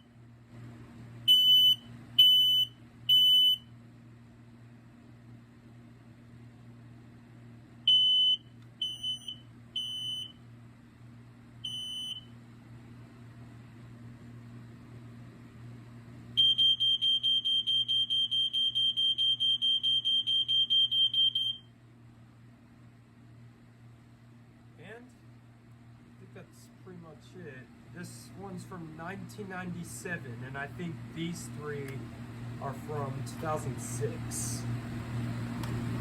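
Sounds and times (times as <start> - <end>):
smoke alarm beeping: 1.3 - 3.7, 7.9 - 10.4, 11.6 - 12.3, 16.4 - 21.7.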